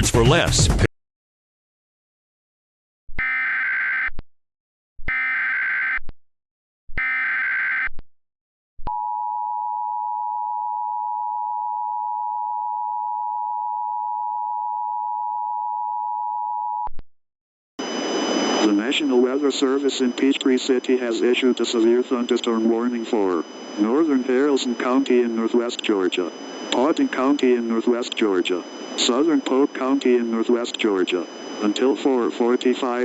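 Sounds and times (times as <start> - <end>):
data tone bursts: 17.8 - 33.0
two-tone attention signal: 17.8 - 33.0.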